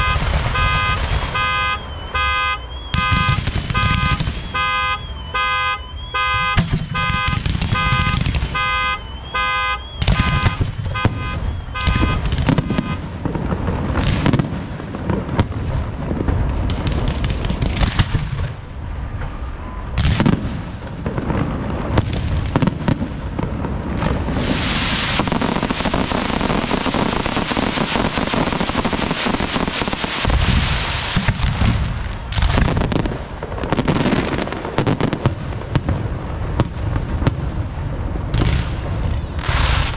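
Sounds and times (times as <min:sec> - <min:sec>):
pulsing electronic alarm tone: 0:00.0 - 0:13.0
fireworks booming: 0:00.0 - 0:39.9
fireworks crackling: 0:00.0 - 0:39.9.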